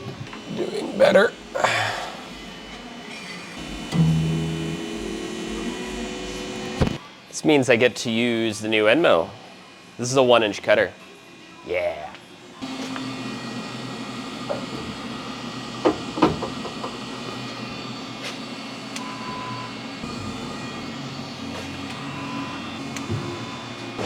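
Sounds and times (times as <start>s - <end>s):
milling machine drone: 0.0s - 7.0s, 12.6s - 24.0s.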